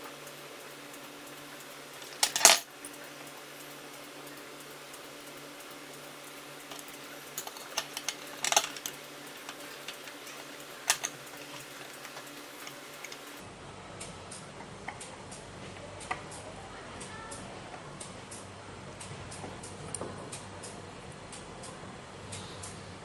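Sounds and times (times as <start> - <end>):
sharp metallic clicks: 0.9 - 13.4.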